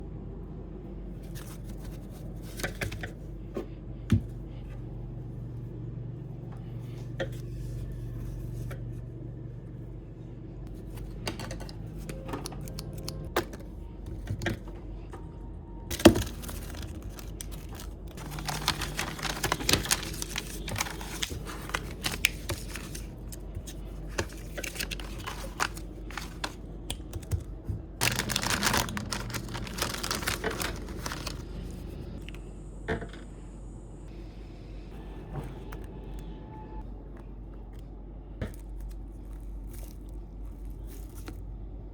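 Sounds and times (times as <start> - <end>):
craft materials crinkling: 15.9 - 27.4, 28.0 - 32.2.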